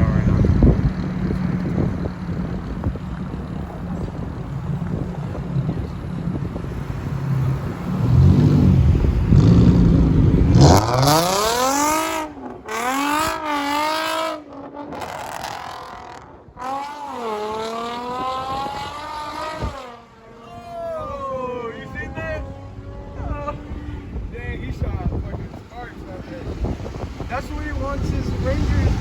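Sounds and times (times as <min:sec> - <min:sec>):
car engine revving: 0:00.0 - 0:29.0.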